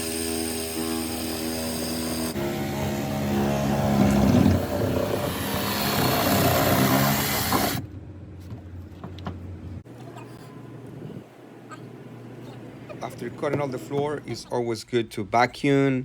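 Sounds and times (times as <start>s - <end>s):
power saw cutting: 0.0s - 7.8s.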